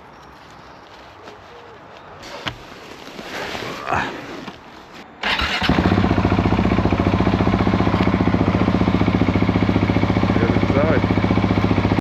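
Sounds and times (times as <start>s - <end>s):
motorcycle engine starting and idling: 5.2s - 12.0s.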